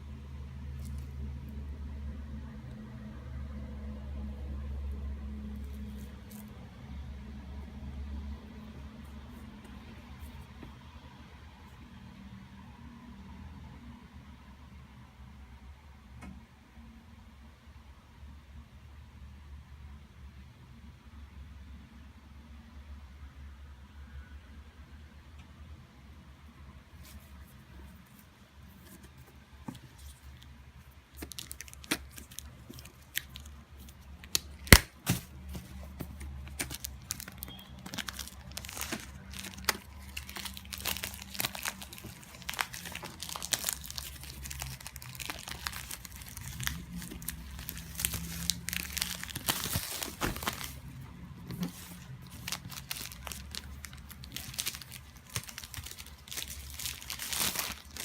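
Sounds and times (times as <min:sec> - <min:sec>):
plastic and cardboard crinkling: 0:27.0 - 0:58.0.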